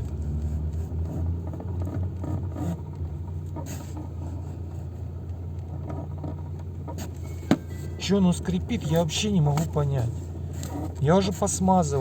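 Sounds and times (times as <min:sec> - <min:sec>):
car engine humming: 0:00.0 - 0:12.0
clutch pedal creaking squeak: 0:00.5 - 0:04.2, 0:05.7 - 0:09.6, 0:10.6 - 0:11.1.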